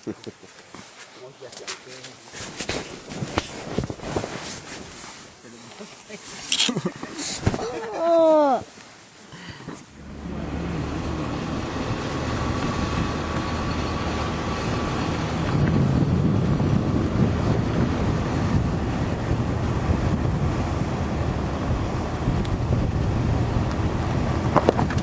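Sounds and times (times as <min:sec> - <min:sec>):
vehicle rumble: 0:09.2 - 0:25.0
wind buffeting microphone: 0:10.0 - 0:25.0.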